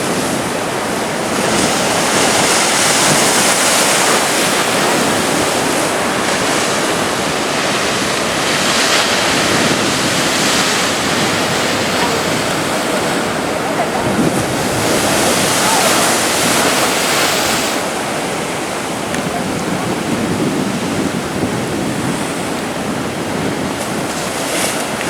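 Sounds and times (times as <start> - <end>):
surf breaking on beach: 0.0 - 25.0.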